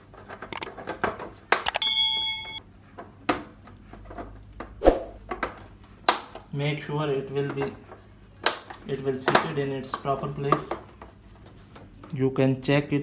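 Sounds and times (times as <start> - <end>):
short ringing ding: 1.8 - 2.6.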